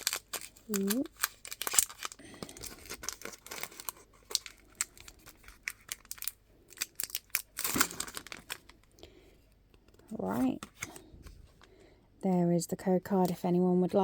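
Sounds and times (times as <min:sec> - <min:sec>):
trading cards being handled: 0:00.0 - 0:08.8, 0:09.8 - 0:11.7
foil wrapper crinkling and tearing: 0:00.0 - 0:09.0.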